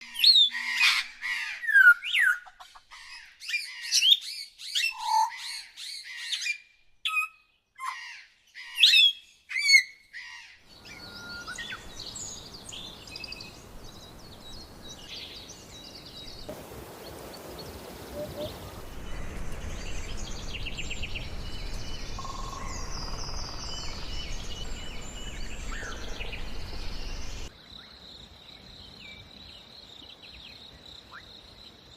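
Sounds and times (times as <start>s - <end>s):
songbirds chirping: 0.0s - 31.9s
low rumble and hiss: 16.5s - 27.5s.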